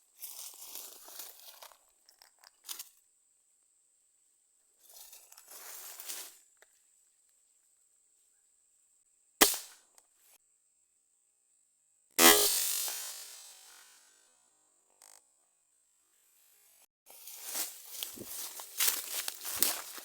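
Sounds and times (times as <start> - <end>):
gunshot: 9.4 - 9.8
rustling through brush: 17.1 - 20.0.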